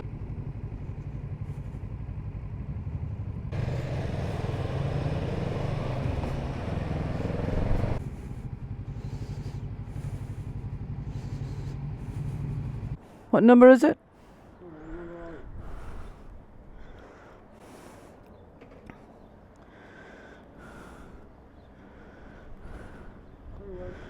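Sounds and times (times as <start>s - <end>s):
motorcycle engine running: 0.0s - 13.0s
wind and road noise: 0.0s - 24.0s.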